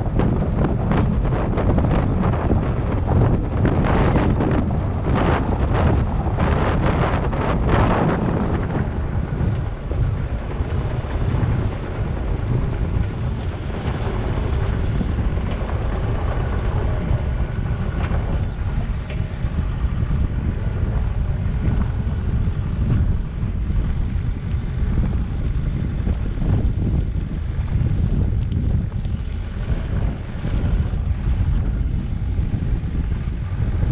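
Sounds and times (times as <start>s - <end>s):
diesel engine running: 0.0s - 33.9s
wind buffeting microphone: 0.0s - 33.9s.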